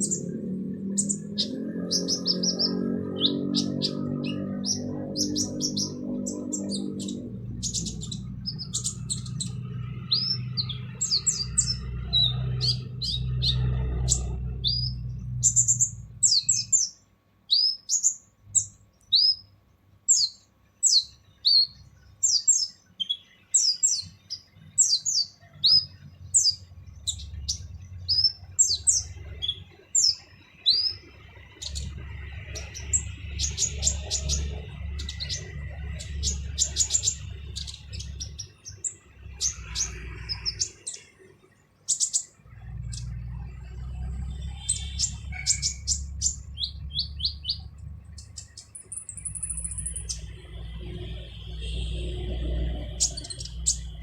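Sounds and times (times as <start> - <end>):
low hum: 0.0 - 17.3, 24.0 - 54.0
sunbird harsh chirps: 0.0 - 19.5, 20.1 - 54.0.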